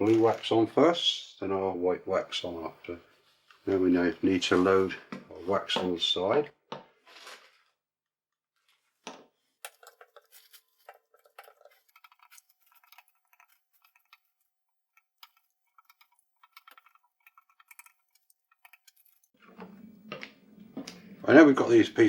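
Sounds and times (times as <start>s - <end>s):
small clicks and light scraping: 9.0s - 21.1s.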